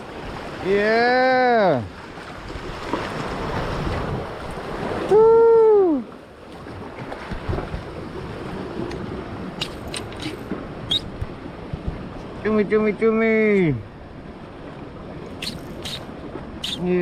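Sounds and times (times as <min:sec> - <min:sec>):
sea water washing and slapping: 0:00.0 - 0:12.6, 0:13.4 - 0:17.0
wind noise on microphone: 0:02.5 - 0:05.9, 0:07.3 - 0:12.3
man whooping: 0:05.1 - 0:06.1.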